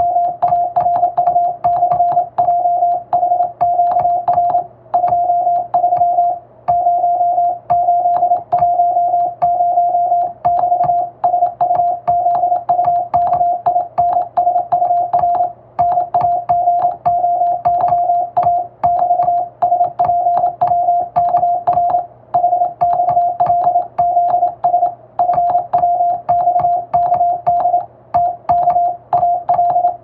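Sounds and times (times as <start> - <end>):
morse code tone: 0.0 - 30.0
telegraph key clicks: 10.2 - 30.0.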